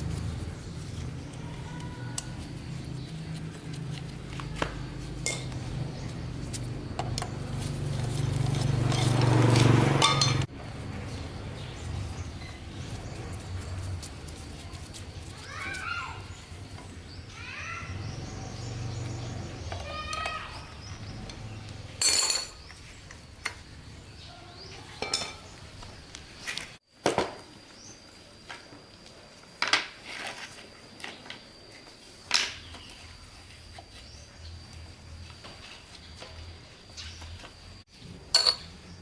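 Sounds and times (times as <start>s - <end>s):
metal tools clinking: 5.2s - 5.6s, 7.0s - 10.5s, 19.7s - 22.8s, 25.0s - 25.5s, 38.3s - 38.7s.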